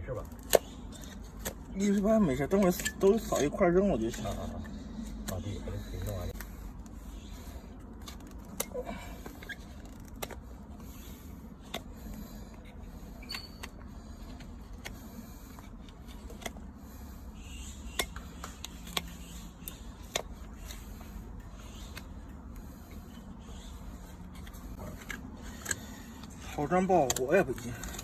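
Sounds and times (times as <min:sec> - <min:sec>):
steady low hum: 0:00.0 - 0:28.0
hand tools clicking and tapping: 0:17.9 - 0:23.0, 0:24.2 - 0:28.0.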